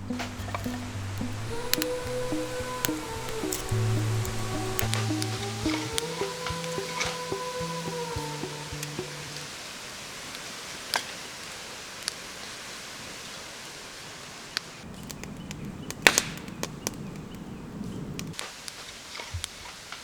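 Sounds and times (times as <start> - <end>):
campfire crackling and popping: 0.0 - 9.6, 14.6 - 20.0.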